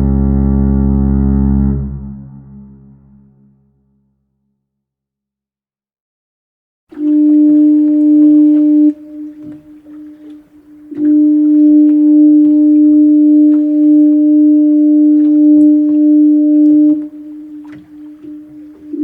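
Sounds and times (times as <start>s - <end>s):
foghorn blast: 0.0s - 3.6s, 7.0s - 19.0s
faint steady tone: 6.9s - 19.0s.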